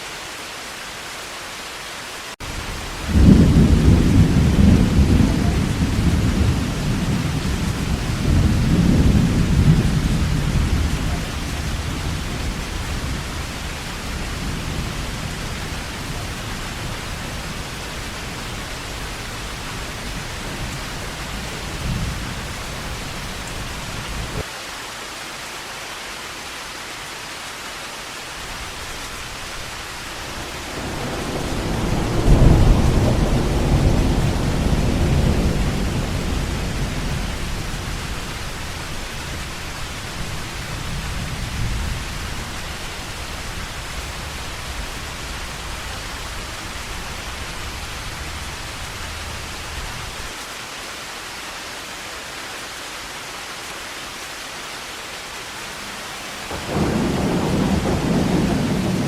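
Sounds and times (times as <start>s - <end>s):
heavy rain: 0.0s - 59.0s
thunder rumbling: 2.4s - 24.4s, 28.4s - 50.4s, 55.8s - 59.0s.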